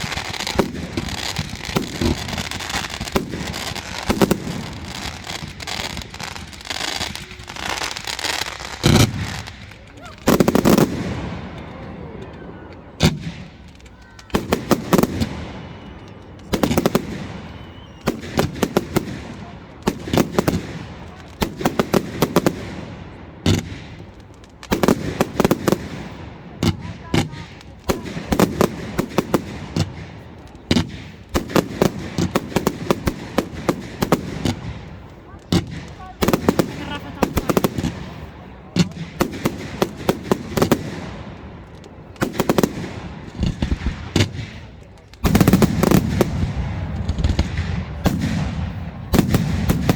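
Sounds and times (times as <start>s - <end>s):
fireworks bangs and cracks: 0.0s - 49.9s.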